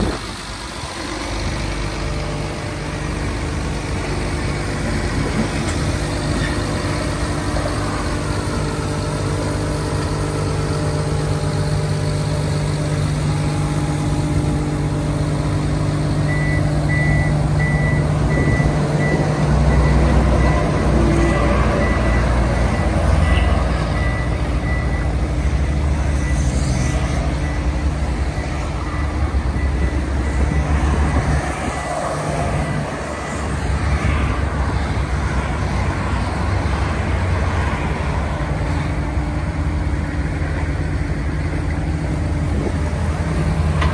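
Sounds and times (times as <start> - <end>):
excavator diesel engine running: 0.0 - 43.9
high-pitched beeping alarm: 16.2 - 33.5.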